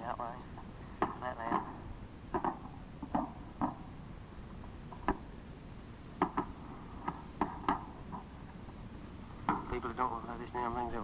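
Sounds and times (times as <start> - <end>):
tape hiss: 0.0 - 11.0
short sharp pops: 6.2 - 8.3.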